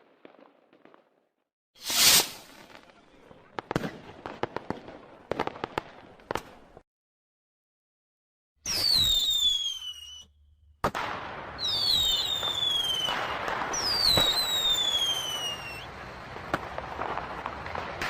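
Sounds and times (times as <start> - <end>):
firework whistles falling in pitch: 1.8 - 2.5, 8.6 - 10.4, 11.6 - 15.9
firework bangs: 1.8 - 6.6, 10.8 - 18.0
fireworks crackling: 1.8 - 6.8, 10.8 - 18.0.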